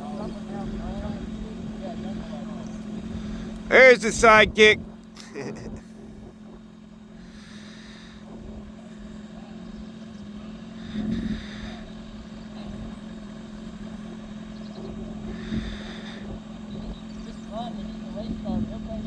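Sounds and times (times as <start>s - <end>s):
low engine hum: 5.8s - 19.0s.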